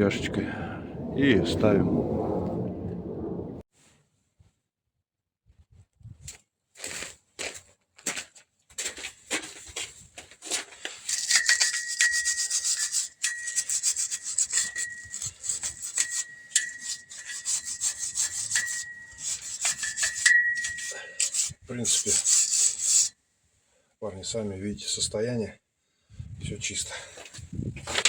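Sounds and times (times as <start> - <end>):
high metallic ring: 11.1 - 21.4
hand scrubbing steel brake drum: 11.1 - 23.1.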